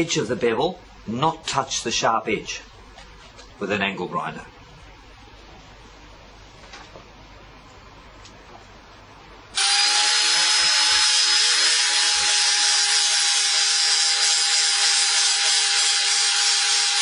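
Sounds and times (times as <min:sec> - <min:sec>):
angle grinder whining: 0:09.6 - 0:17.0.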